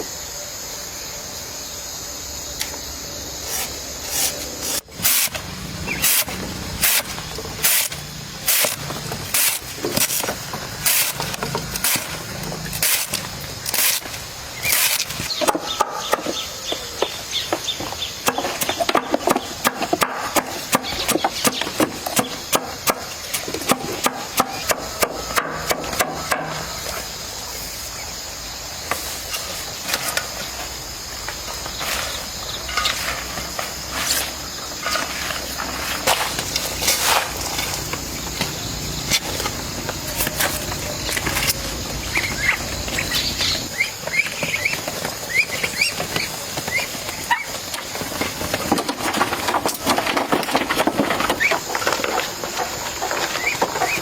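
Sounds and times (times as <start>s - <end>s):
scattered knocks: 17.5s - 26.8s.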